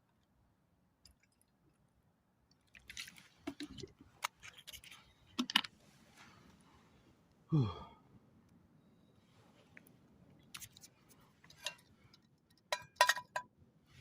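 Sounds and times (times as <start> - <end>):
spoon clinking in a pot: 12.7 - 13.5.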